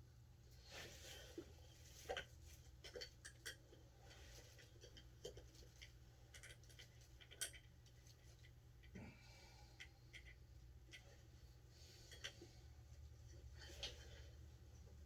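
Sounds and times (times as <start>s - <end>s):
low steady hum: 0.0s - 15.0s
small metal parts clicking: 5.2s - 8.0s.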